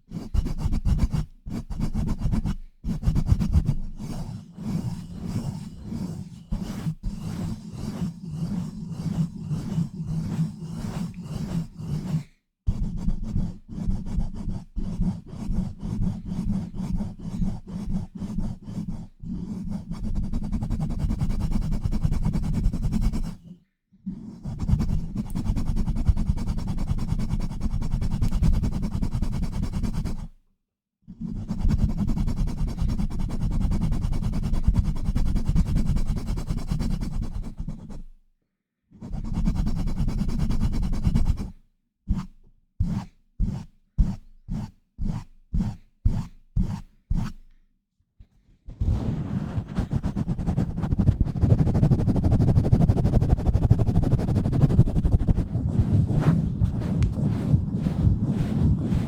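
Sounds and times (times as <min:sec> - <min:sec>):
hands rubbing against microphone: 0:48.7 - 0:59.0.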